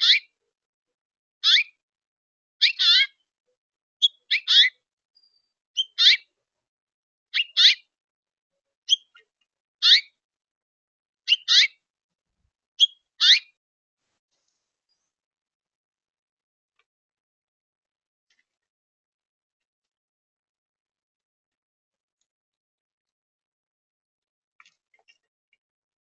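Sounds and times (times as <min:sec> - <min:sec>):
bird calling: 0:02.6 - 0:03.1, 0:04.0 - 0:04.7, 0:05.8 - 0:06.2, 0:07.4 - 0:07.8, 0:12.8 - 0:13.5.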